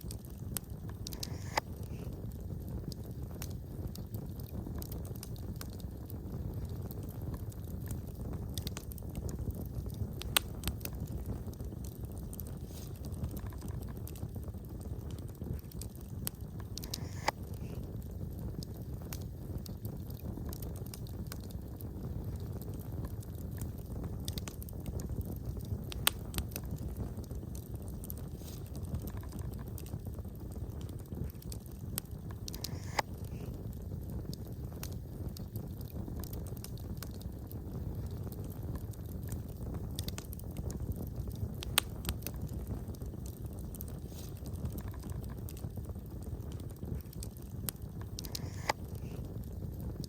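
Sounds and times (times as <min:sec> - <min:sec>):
fire popping and snapping: 0:00.0 - 0:50.0
wood fire crackling: 0:00.0 - 0:50.0.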